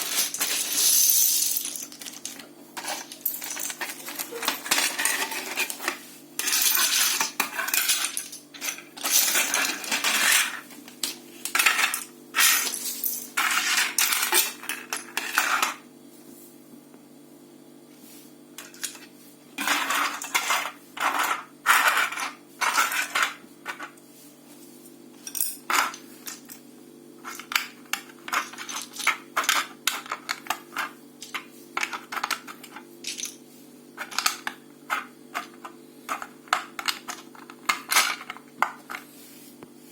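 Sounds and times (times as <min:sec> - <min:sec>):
mosaic pieces clattering: 0:00.0 - 0:15.8.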